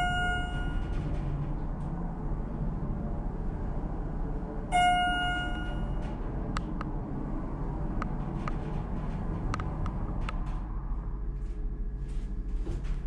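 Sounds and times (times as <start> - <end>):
elevator chime: 0.0 - 1.6, 4.7 - 6.3
elevator hum: 0.0 - 13.0.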